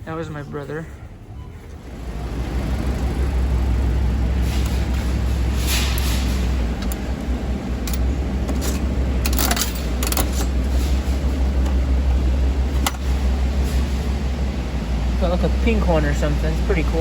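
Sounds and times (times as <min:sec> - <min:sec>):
steady low rumble: 0:00.0 - 0:17.0
vending machine clicks and clatters: 0:04.2 - 0:14.2.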